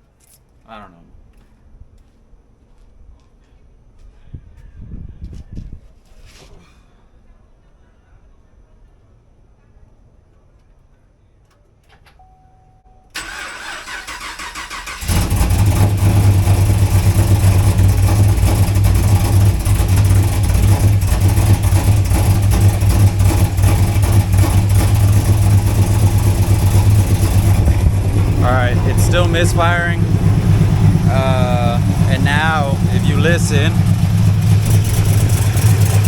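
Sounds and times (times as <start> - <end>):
misfiring engine idling: 13.2 - 36.0
starter cranking engine: 13.2 - 36.0.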